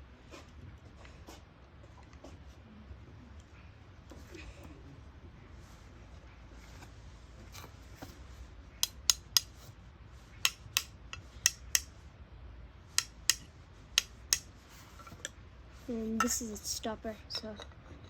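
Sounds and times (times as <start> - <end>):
small metal parts clicking: 8.8 - 9.5, 10.5 - 11.9.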